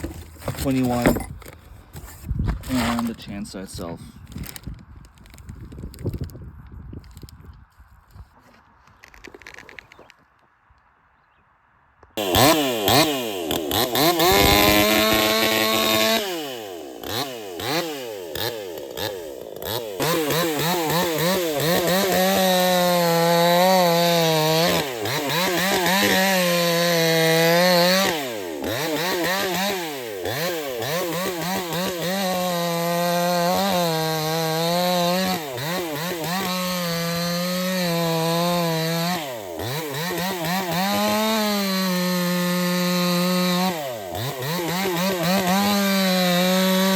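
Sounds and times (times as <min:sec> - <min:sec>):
chainsaw engine revving: 0:12.2 - 0:46.9.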